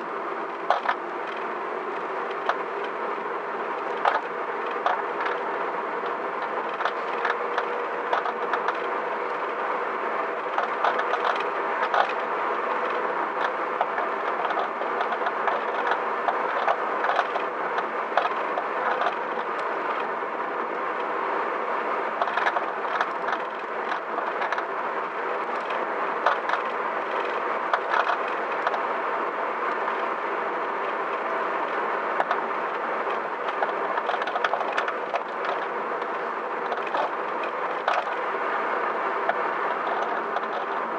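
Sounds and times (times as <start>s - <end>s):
road noise: 0.0s - 40.9s
suspension clicks and knocks: 6.0s - 8.9s, 10.4s - 20.1s, 22.2s - 24.7s, 25.5s - 28.8s, 31.2s - 38.2s, 39.2s - 40.9s.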